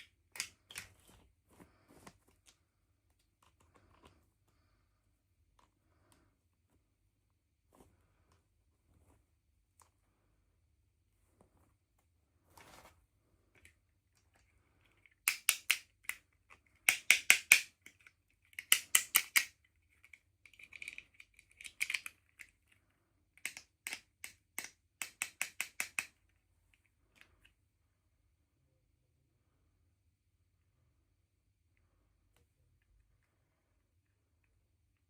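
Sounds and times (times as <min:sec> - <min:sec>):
clicks and taps of toy pieces: 0:00.0 - 0:01.1, 0:13.6 - 0:27.5.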